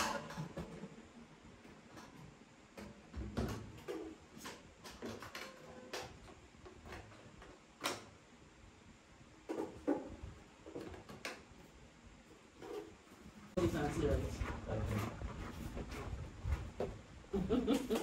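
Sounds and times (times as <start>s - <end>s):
plastic parts clicking and knocking: 0.0s - 8.2s, 9.4s - 11.6s.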